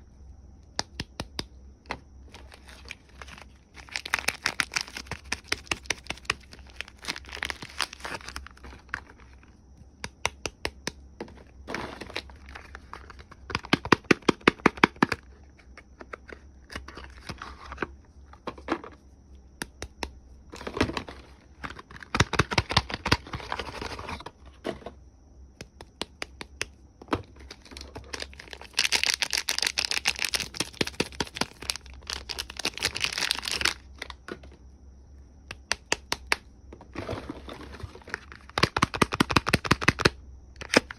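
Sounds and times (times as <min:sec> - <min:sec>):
wrappers crinkling and tearing: 0:02.4 - 0:09.1, 0:27.6 - 0:33.8.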